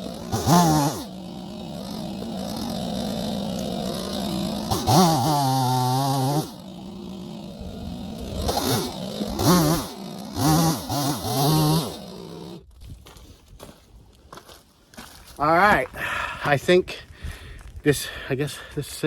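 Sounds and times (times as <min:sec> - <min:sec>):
chainsaw cutting wood: 0:00.0 - 0:12.7.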